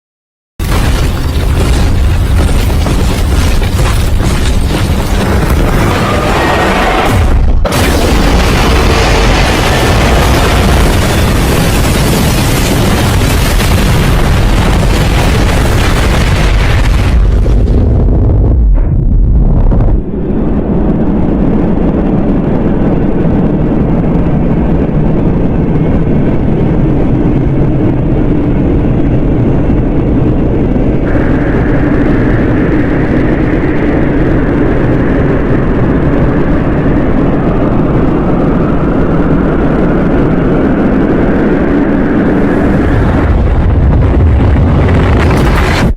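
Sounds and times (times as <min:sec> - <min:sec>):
loud rushing blast: 0:00.6 - 0:23.2, 0:30.9 - 0:45.9
steady low hum: 0:18.1 - 0:44.5.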